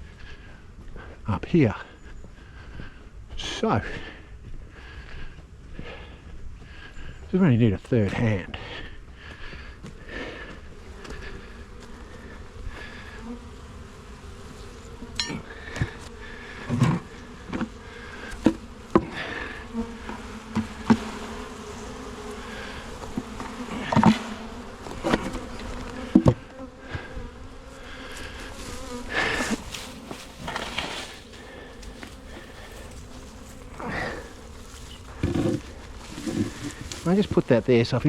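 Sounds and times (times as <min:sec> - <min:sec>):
honeybees buzzing: 0:00.0 - 0:38.0
wooden hive frames knocking: 0:15.0 - 0:27.2, 0:28.8 - 0:37.5.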